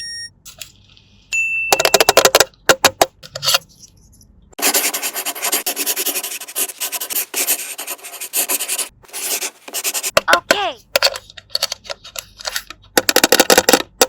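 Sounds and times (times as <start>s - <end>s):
scratchy rubbing on toy: 4.6s - 10.2s.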